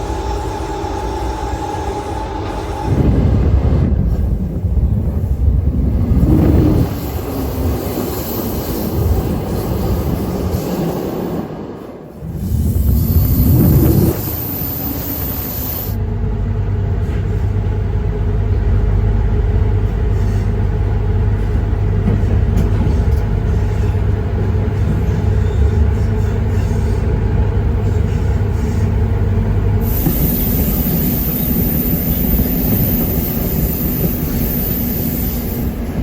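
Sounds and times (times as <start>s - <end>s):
train rumbling from on board: 0.0s - 36.0s.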